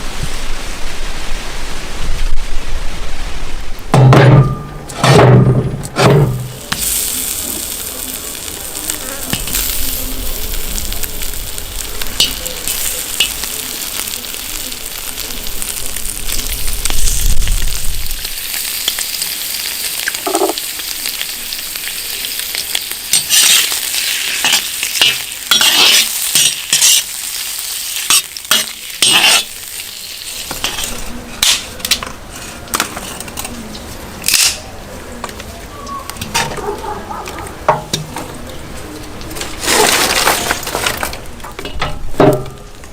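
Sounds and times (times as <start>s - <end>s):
food sizzling in hot oil: 6.0s - 32.0s
utensil scraping and knocking pot: 20.2s - 20.6s, 23.1s - 27.2s, 28.1s - 29.6s.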